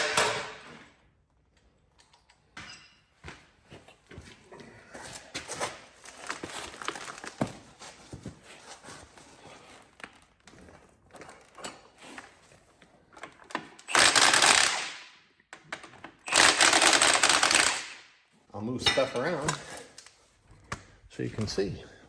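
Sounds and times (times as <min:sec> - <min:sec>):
metal parts and tools clattering: 0:00.0 - 0:00.8, 0:10.6 - 0:14.7, 0:18.8 - 0:20.1.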